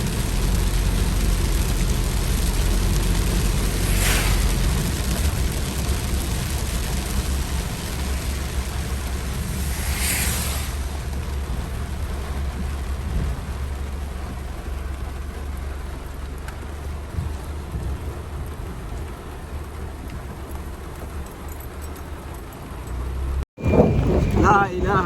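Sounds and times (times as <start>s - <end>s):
low thunder rumble: 0.0s - 14.6s, 23.6s - 25.0s
rain hissing: 0.0s - 23.4s.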